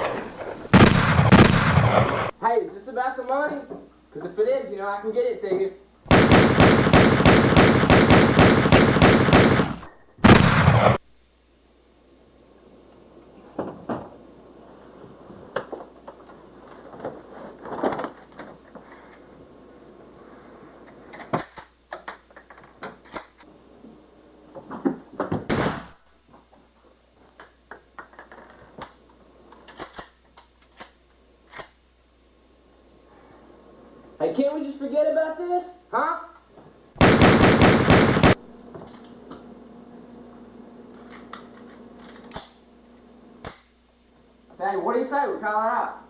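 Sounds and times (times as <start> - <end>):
automatic gunfire bursts: 0.0 - 2.3, 6.1 - 11.0, 37.0 - 38.4.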